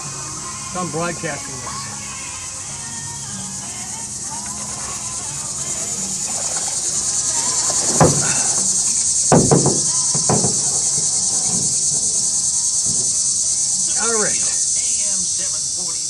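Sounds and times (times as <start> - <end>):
insects buzzing chorus: 0.0 - 16.0
sharp knocks: 7.4 - 12.1.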